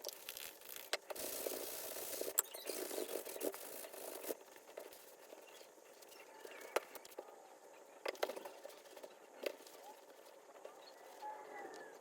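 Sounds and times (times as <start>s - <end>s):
hands rubbing leather glove: 0.3s - 5.3s.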